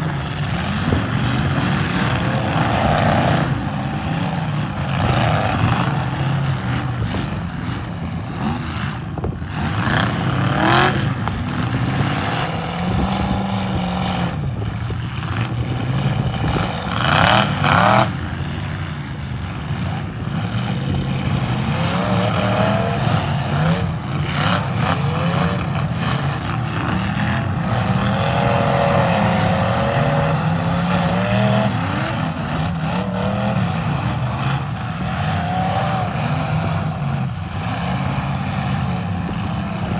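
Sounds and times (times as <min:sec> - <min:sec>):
car engines revving: 0:00.0 - 0:39.9.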